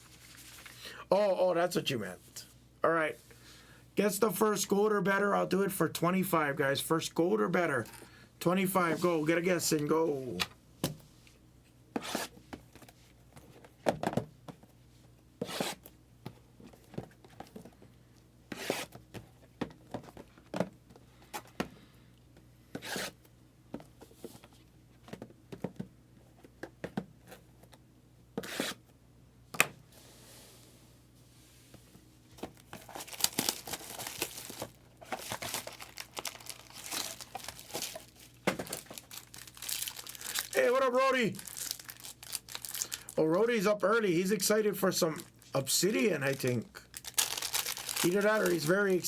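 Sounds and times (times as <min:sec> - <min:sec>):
packs tearing open: 0:32.8 - 0:43.2, 0:46.3 - 0:48.8
plastic wrapper crinkling: 0:32.8 - 0:43.2, 0:45.1 - 0:49.0.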